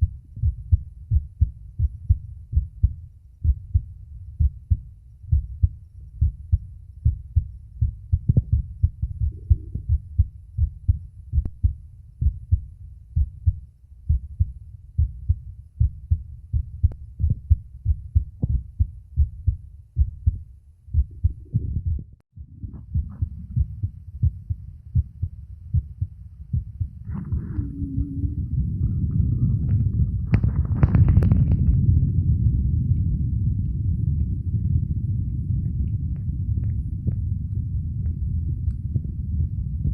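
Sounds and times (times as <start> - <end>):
heartbeat lub-dub: 0.0 - 39.9.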